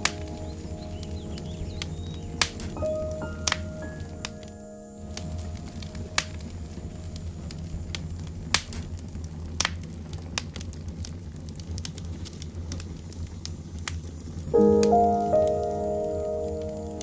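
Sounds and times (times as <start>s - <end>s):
sharp crackles and clicks: 0.0s - 17.0s.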